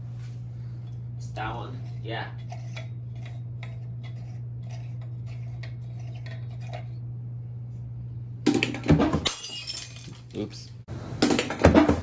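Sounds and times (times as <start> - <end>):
low hum: 0.0 - 11.0
glass bulb shattering: 9.2 - 10.3.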